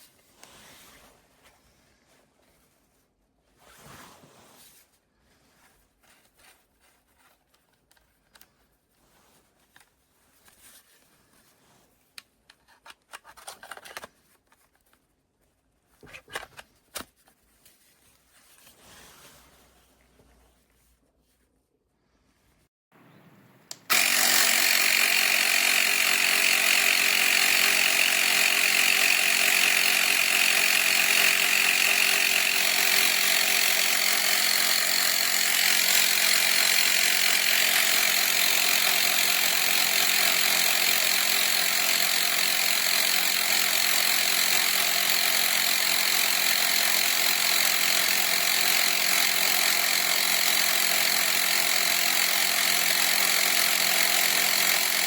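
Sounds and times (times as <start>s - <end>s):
small electric compressor running: 23.7s - 55.0s.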